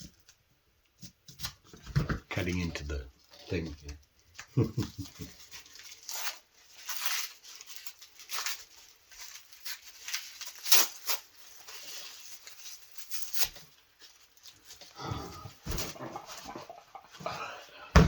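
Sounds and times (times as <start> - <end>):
packaging being cut and torn: 5.6 - 13.6.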